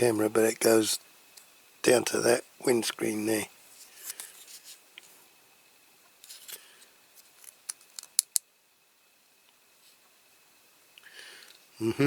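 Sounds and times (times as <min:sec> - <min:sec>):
toy parts clicking: 0:07.4 - 0:08.4.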